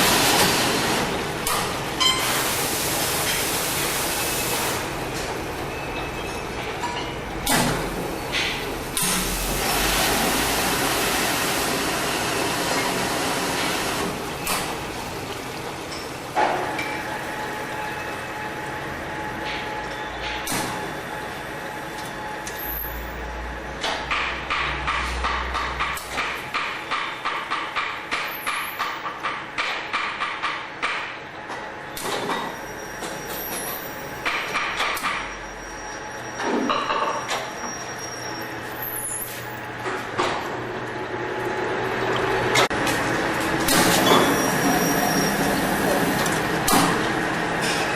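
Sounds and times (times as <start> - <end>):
spray jets rushing water: 2.2 - 4.9, 9.0 - 15.4.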